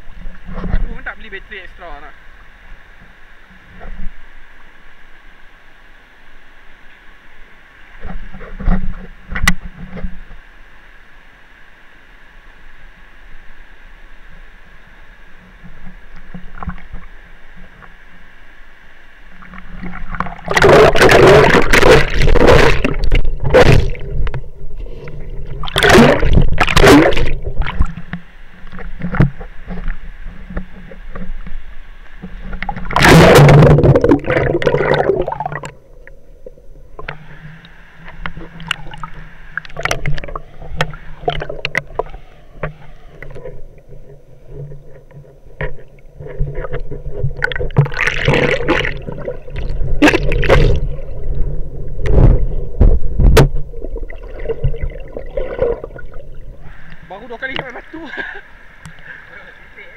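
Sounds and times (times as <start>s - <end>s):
rush of water: 0.0s - 59.9s
water splashing at microphone: 19.3s - 57.9s.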